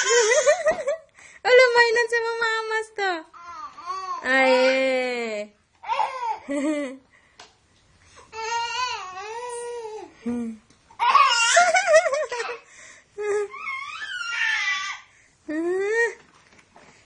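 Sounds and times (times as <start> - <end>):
baby laughing: 11.0 - 12.6.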